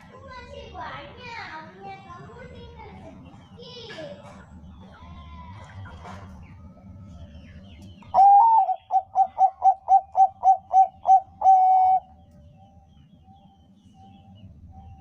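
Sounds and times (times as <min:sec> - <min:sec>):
dove cooing song: 0:05.7 - 0:15.0.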